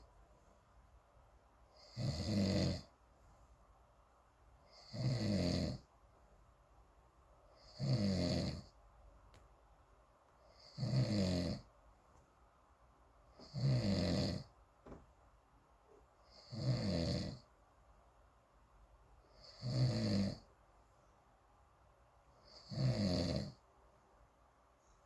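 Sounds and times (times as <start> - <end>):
person snoring: 1.8 - 2.9, 4.7 - 5.8, 7.6 - 8.7, 10.5 - 11.6, 13.4 - 14.5, 16.3 - 17.4, 19.3 - 20.5, 22.4 - 23.6.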